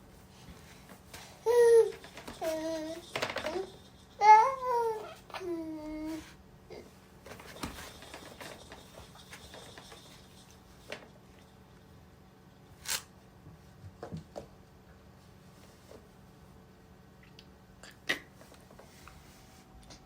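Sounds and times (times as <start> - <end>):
faint rustling and handling: 0.0 - 11.9, 18.4 - 19.8.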